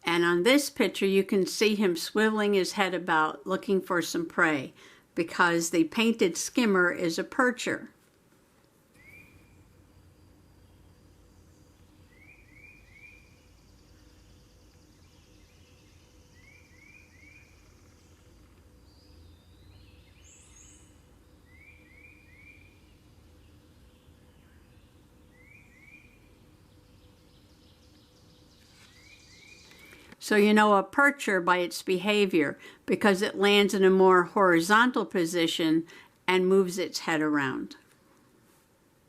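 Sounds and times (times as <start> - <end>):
low steady hum: 0.0 - 39.0
songbird singing: 8.9 - 35.8.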